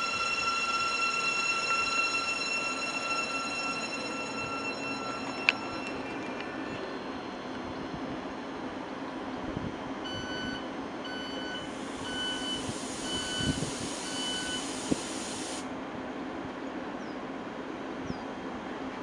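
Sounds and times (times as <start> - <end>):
train door warning beeps: 0.0 - 7.2, 10.0 - 15.6
low train hum: 0.0 - 19.0
air hiss: 11.7 - 15.7.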